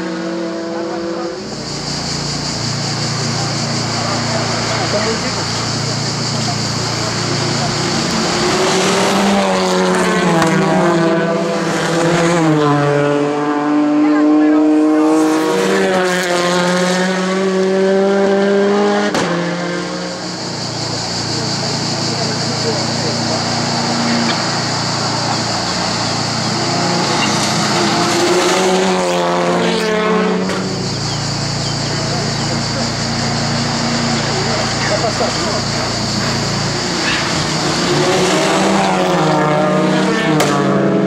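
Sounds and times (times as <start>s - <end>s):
racing car engine running hard: 0.0s - 41.0s.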